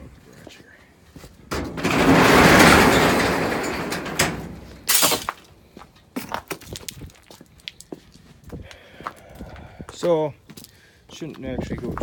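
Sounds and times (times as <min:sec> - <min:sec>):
garage door rattling: 0:01.5 - 0:05.3
garage door clatter: 0:01.5 - 0:05.4.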